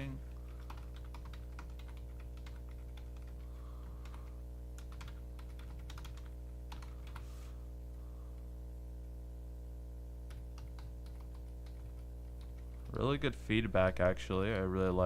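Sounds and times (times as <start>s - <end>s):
low electrical hum: 0.0s - 15.0s.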